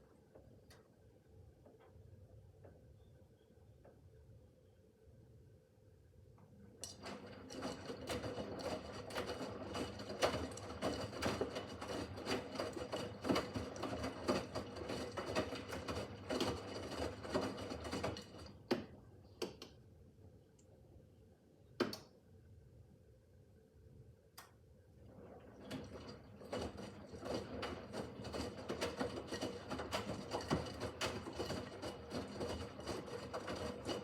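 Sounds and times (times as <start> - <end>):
washing machine drum turning: 25.2 - 34.0.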